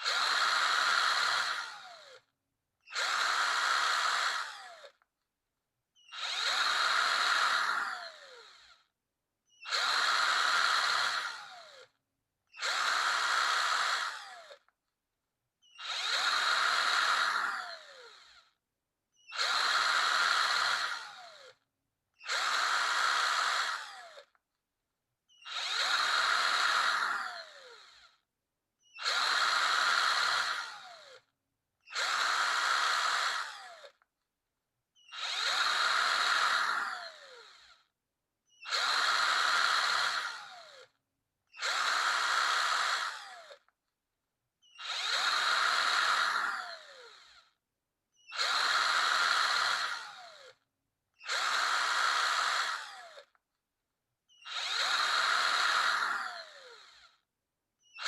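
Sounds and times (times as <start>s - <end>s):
power drill bursts: 0.0s - 2.3s, 2.9s - 5.0s, 6.0s - 8.8s, 9.5s - 11.9s, 12.6s - 14.7s, 15.6s - 18.5s, 19.2s - 21.6s, 22.2s - 24.4s, 25.3s - 28.2s, 28.8s - 34.0s, 35.0s - 37.8s, 38.5s - 40.9s, 41.6s - 43.7s, 44.6s - 47.5s, 48.2s - 50.6s, 51.2s - 53.4s, 54.3s - 57.2s.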